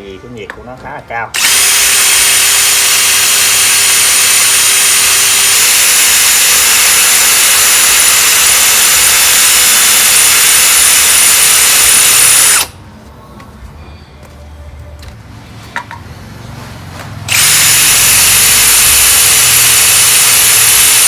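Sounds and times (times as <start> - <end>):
cordless drill grinding into glass: 1.4 - 12.7, 17.3 - 21.0.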